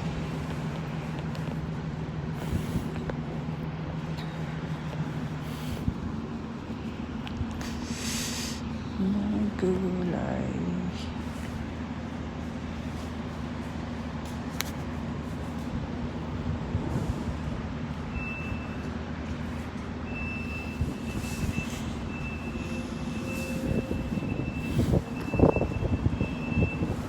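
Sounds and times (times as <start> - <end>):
heavy vehicle engine humming: 0.0 - 27.0
reversing alarm beeps: 18.1 - 18.9, 20.0 - 27.0.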